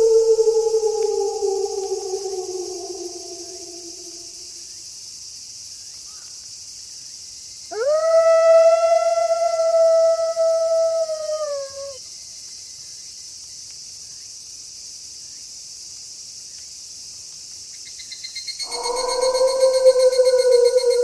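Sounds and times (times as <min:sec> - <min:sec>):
wolf howling: 0:00.0 - 0:04.5, 0:07.7 - 0:12.0, 0:18.6 - 0:21.0
pulsing insect trill: 0:00.0 - 0:04.6, 0:07.7 - 0:12.0, 0:18.4 - 0:21.0
night insects hissing: 0:00.0 - 0:21.0.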